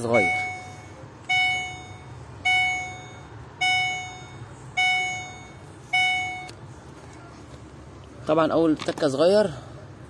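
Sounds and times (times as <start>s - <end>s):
electronic warning chime: 0.0s - 6.5s.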